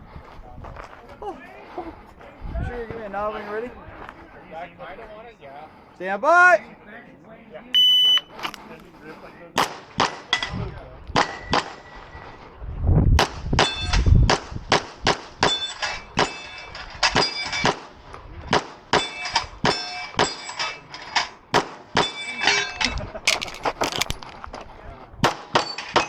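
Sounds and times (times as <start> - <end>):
pistol shots: 9.6 - 10.3.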